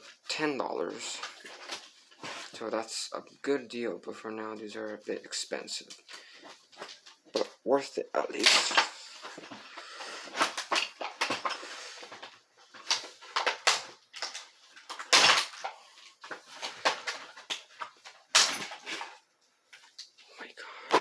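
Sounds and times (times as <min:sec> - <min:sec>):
packaging rustles scrapes and knocks: 0:01.0 - 0:02.6, 0:08.7 - 0:19.2.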